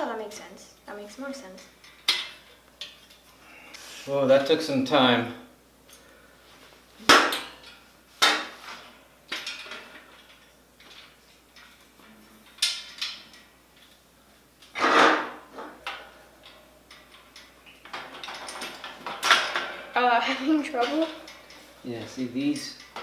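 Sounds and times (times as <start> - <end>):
metal cage parts clanking: 14.8 - 19.8.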